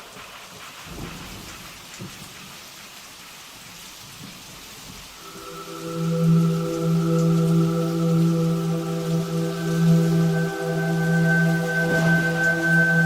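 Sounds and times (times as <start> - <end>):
steady rain falling: 0.0 - 13.0
thunder rumbles: 0.8 - 2.6
sustained low musical chord: 5.2 - 13.0.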